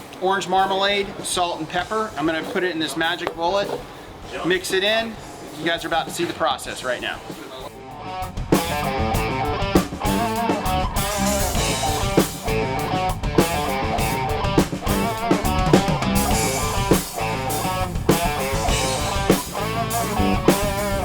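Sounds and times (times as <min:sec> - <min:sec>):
drum kit beat: 0:00.0 - 0:21.0
electric guitar: 0:07.1 - 0:21.0
bass: 0:07.6 - 0:21.0.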